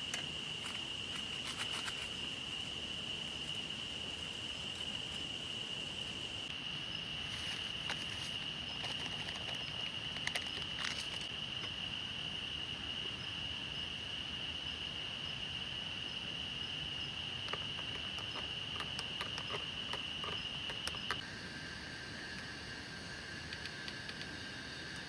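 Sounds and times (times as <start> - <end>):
rain hiss: 0.0 - 8.6
insects chirring: 0.0 - 25.0.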